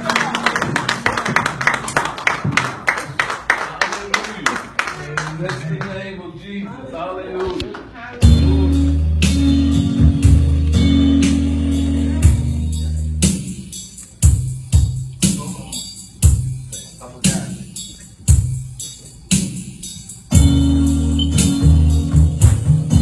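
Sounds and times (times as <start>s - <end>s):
gospel band playing: 8.2s - 23.0s.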